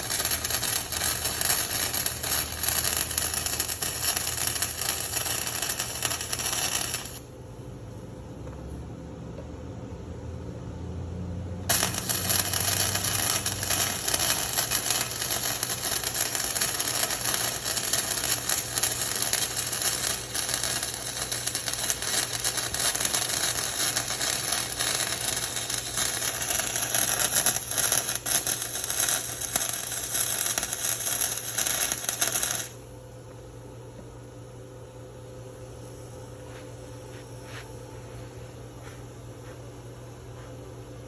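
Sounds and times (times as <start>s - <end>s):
welding arc crackling: 0.0s - 7.4s, 11.7s - 32.8s.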